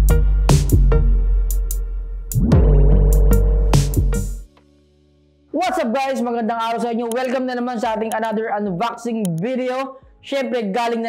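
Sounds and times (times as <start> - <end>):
electronic music with heavy bass: 0.0 - 4.5.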